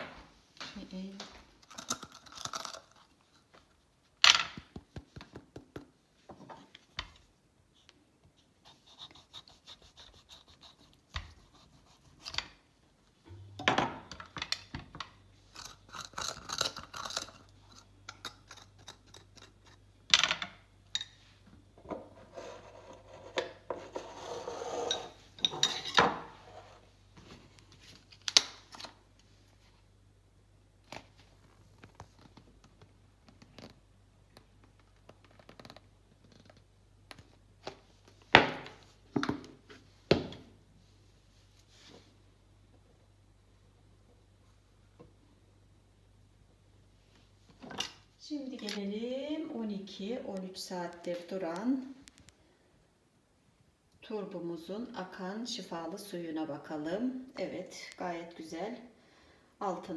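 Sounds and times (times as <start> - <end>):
low steady hum: 0.0 - 59.9
utensils scraping and clinking dishes: 22.6 - 26.7.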